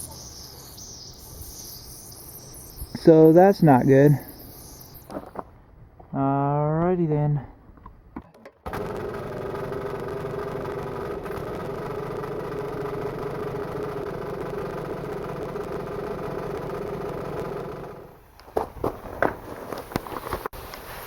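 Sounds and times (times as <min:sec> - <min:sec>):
air compressor humming: 0:00.0 - 0:05.4, 0:08.7 - 0:18.2.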